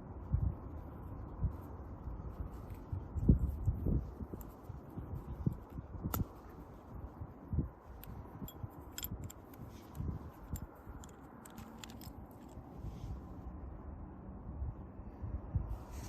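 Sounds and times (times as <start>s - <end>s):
handling noises: 7.8s - 13.4s.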